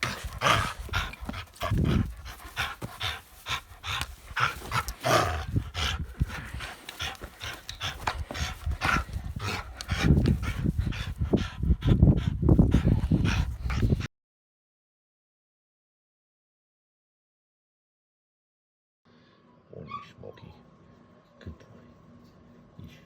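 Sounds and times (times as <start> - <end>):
scuffling and rustling: 0.0 - 11.1
dog panting: 0.0 - 14.1.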